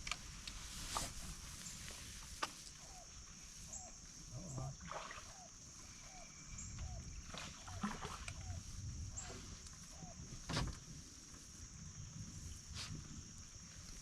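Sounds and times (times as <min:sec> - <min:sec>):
insects droning: 0:00.0 - 0:14.0
knocks and water splashes: 0:04.8 - 0:05.5, 0:06.8 - 0:08.5.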